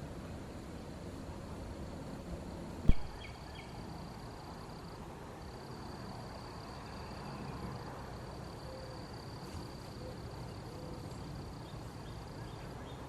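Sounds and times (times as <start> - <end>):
high insect drone: 0.0 - 13.0
sharp thump: 2.9 - 3.1.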